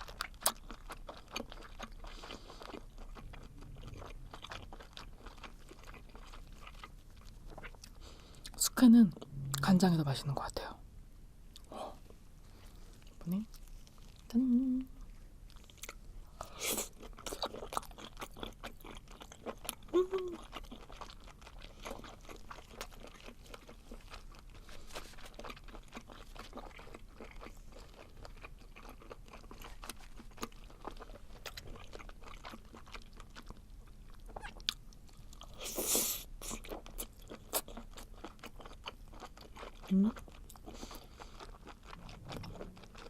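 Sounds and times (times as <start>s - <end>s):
wet chewing crunches: 0.0s - 8.6s, 36.4s - 43.0s.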